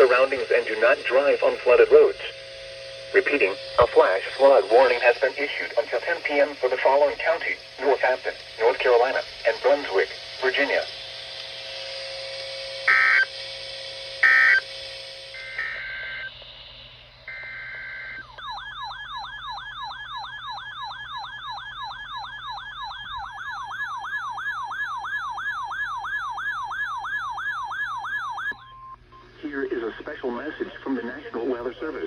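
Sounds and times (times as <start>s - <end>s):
sweeping electronic siren: 0.0s - 7.6s, 12.0s - 29.0s
electronic data squawks: 12.8s - 13.4s, 14.2s - 29.0s.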